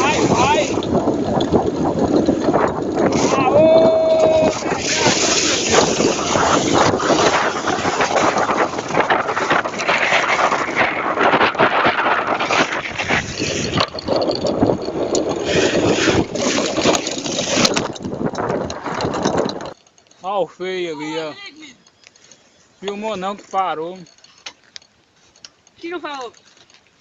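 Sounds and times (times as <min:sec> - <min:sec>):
wind buffeting microphone: 0:00.0 - 0:19.9
bike tyres and frame rattling: 0:00.0 - 0:27.0.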